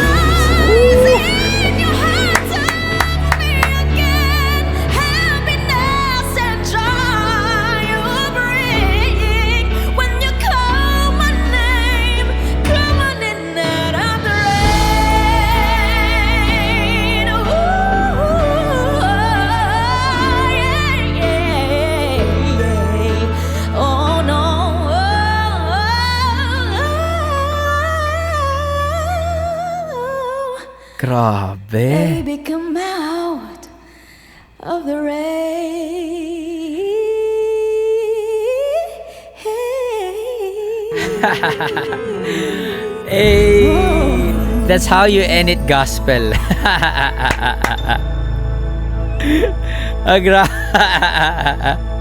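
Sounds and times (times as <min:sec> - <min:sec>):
keyboard chords and bass: 0:00.0 - 0:30.1, 0:41.3 - 0:52.0
woman singing with vibrato: 0:00.0 - 0:30.9, 0:31.9 - 0:33.8, 0:34.6 - 0:45.1.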